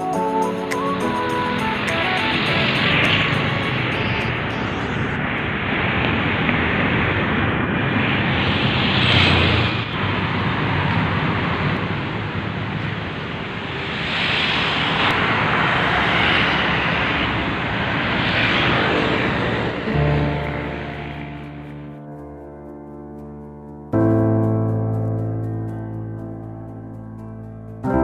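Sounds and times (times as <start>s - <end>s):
vehicle engine and road noise: 0.6s - 28.0s.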